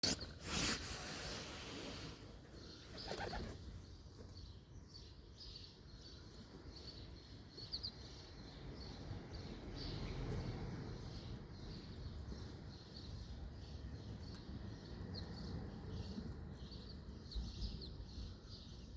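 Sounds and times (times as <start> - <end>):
small birds chirping: 0.0 - 18.9
birds' wings flapping: 2.9 - 3.6.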